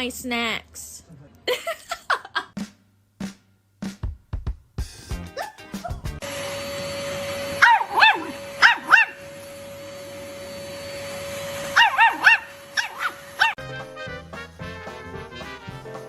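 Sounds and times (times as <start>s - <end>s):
dog barking in high yips: 7.6s - 9.2s, 11.7s - 13.6s.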